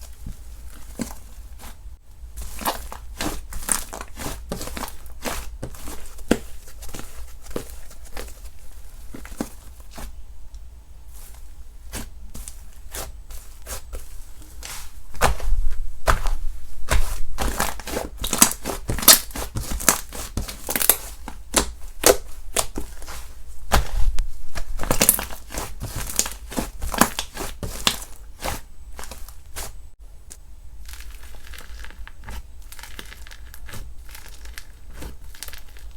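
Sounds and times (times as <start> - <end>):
slime crackling and popping: 16.9 - 29.7, 30.8 - 35.9.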